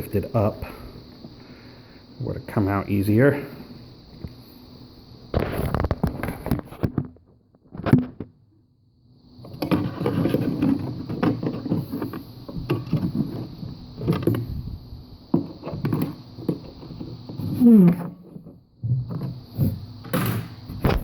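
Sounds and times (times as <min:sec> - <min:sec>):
steady high hiss: 0:00.0 - 0:06.3.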